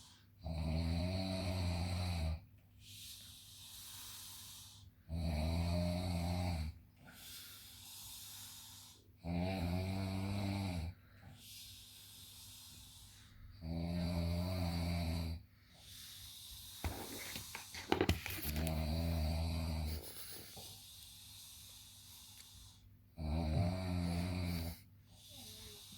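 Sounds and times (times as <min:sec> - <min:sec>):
quiet breaths: 0:00.0 - 0:25.9
person snoring: 0:13.6 - 0:15.4, 0:18.5 - 0:20.7, 0:23.2 - 0:25.8.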